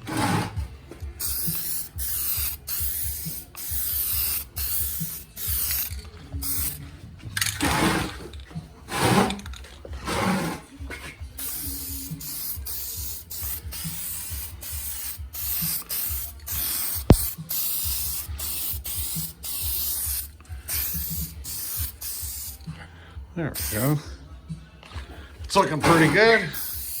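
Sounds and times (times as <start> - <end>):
aerosol can spraying: 0.0 - 6.8, 11.3 - 22.8, 23.5 - 24.0, 25.4 - 27.0.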